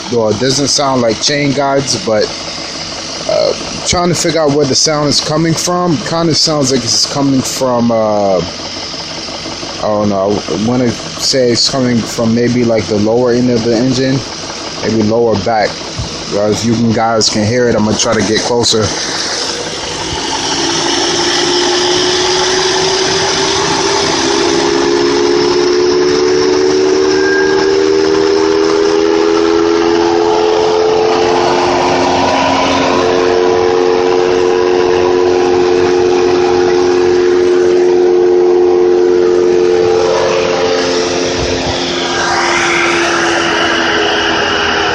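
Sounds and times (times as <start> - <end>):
man talking: 0.0 - 2.3, 3.3 - 8.5, 9.8 - 19.0
car engine idling: 0.0 - 44.9
engine whining tones: 0.0 - 44.9.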